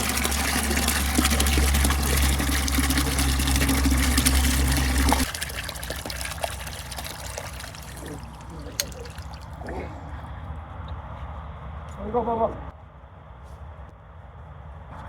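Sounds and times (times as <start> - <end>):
water running into a bucket: 0.0 - 9.9
water trickling: 0.0 - 11.0
low hum: 0.0 - 11.9.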